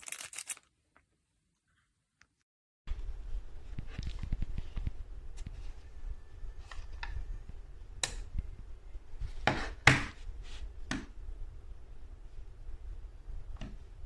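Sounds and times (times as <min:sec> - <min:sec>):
low steady rumble: 0:02.9 - 0:14.0.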